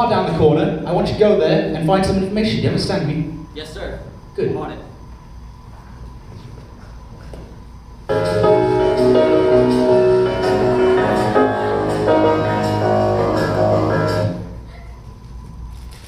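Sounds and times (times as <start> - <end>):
loud instrumental music with beat: 8.1 - 14.5.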